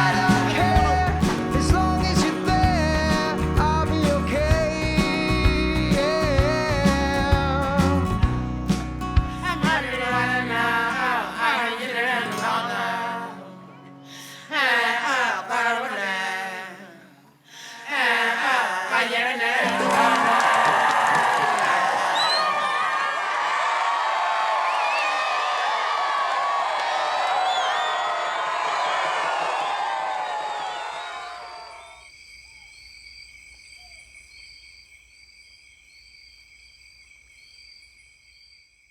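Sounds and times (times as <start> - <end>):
crowd cheering: 0.0 - 8.8, 9.4 - 11.6, 18.2 - 32.0
music with singing voices: 0.0 - 16.9
rising and falling chirp: 30.2 - 32.0.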